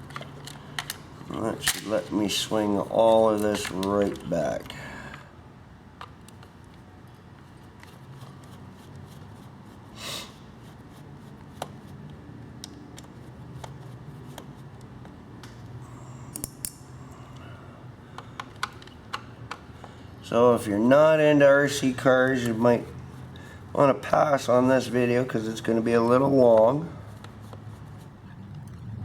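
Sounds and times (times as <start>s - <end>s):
small clicks and taps of parts: 0.0s - 1.9s, 6.0s - 6.8s, 11.5s - 16.8s, 18.1s - 20.0s
low steady hum: 12.6s - 29.0s.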